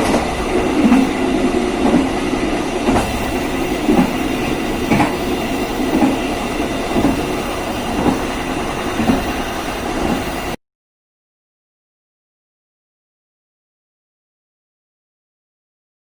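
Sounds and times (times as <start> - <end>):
train rumbling along track: 0.0 - 10.6
wheels clacking over rail joints: 0.0 - 10.6.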